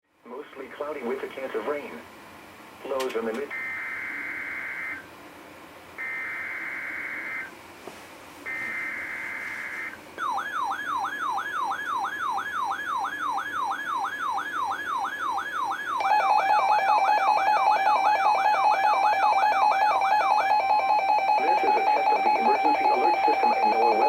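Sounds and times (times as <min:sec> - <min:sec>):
electronic alarm sweeping tone: 0:03.5 - 0:05.0, 0:06.0 - 0:07.5, 0:08.5 - 0:24.0
steady beeping alarm tone: 0:03.5 - 0:05.1, 0:06.0 - 0:07.5, 0:08.5 - 0:24.0.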